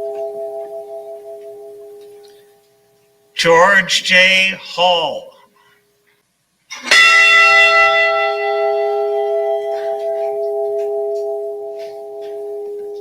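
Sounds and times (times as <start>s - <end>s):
ship's bell ringing: 0.0s - 2.4s, 6.8s - 13.0s.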